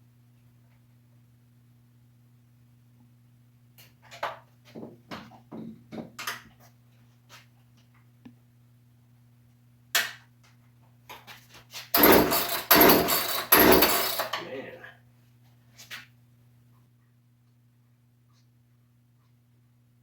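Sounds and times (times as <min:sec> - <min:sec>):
workshop clicks and knocks: 0:11.1 - 0:14.4
loud rough scraping: 0:12.0 - 0:14.4.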